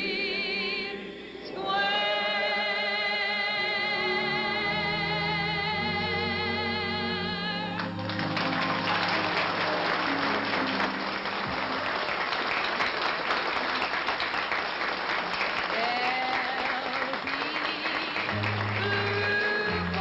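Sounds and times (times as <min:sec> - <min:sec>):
woman singing with vibrato: 0:00.0 - 0:09.3, 0:15.7 - 0:20.0
orchestral accompaniment: 0:03.9 - 0:12.1
audience applause: 0:07.8 - 0:20.0.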